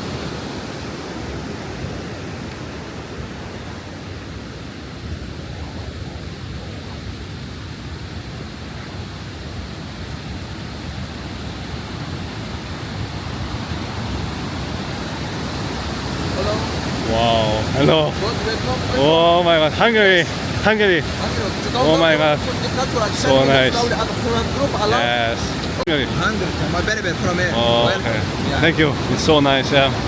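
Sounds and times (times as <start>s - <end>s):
waterfall rushing: 6.2s - 30.0s.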